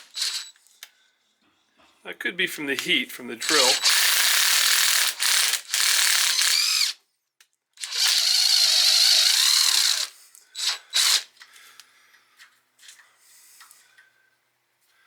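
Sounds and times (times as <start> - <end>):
electric drill boring into steel: 0.0 - 0.5, 3.4 - 7.0, 7.8 - 11.3.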